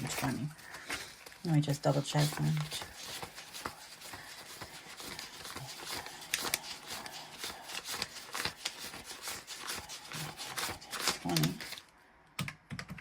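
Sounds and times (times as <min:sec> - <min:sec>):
banknotes flicking: 0:01.9 - 0:11.8.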